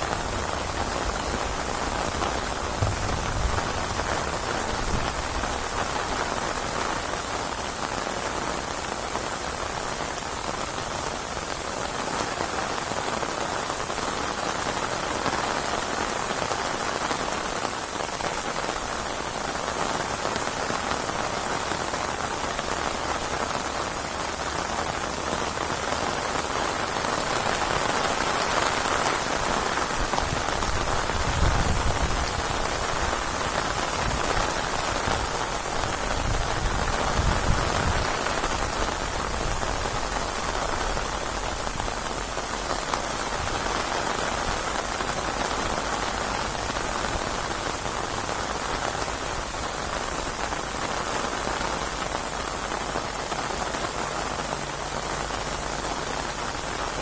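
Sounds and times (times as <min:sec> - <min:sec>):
heavy rain falling: 0:00.0 - 0:57.0
low rumbles: 0:02.6 - 0:05.1.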